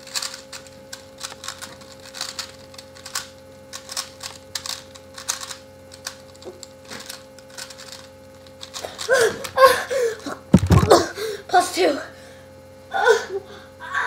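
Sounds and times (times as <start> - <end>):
person breathing: 11.1 - 11.5.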